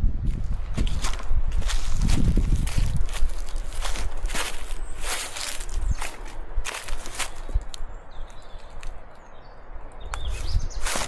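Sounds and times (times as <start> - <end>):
low outdoor rumble: 0.0 - 11.0
faint bird chirps: 7.9 - 11.0.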